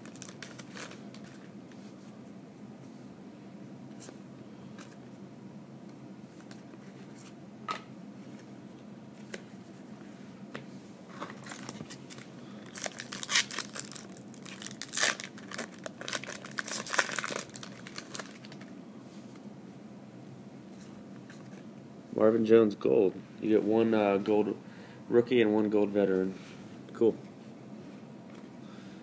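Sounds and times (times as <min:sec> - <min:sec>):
wrapper tearing and crinkling: 0:00.0 - 0:01.4, 0:11.4 - 0:18.7.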